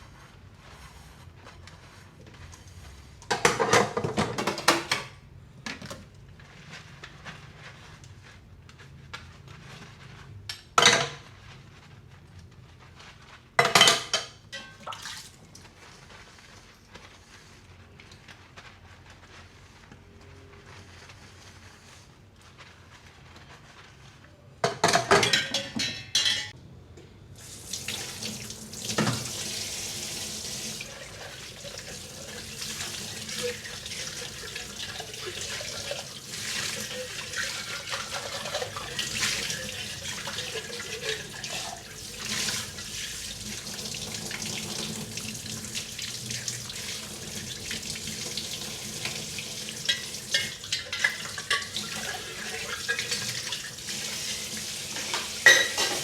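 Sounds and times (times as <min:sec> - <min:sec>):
dishes clinking: 0:24.6 - 0:26.6, 0:49.9 - 0:53.3, 0:55.0 - 0:56.0
tap running into sink: 0:27.7 - 0:30.9, 0:46.9 - 0:56.0.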